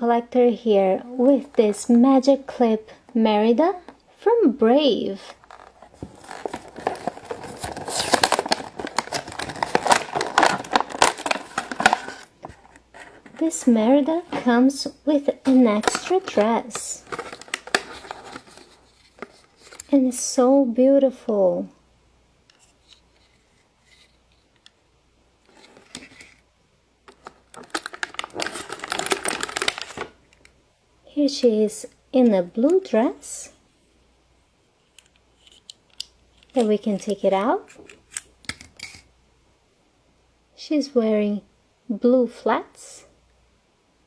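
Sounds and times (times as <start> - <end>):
crackling and rustling: 5.1 - 20.0, 25.4 - 26.5, 27.1 - 30.5
plastic packaging crinkling: 5.2 - 19.9, 25.5 - 26.4, 27.1 - 30.5.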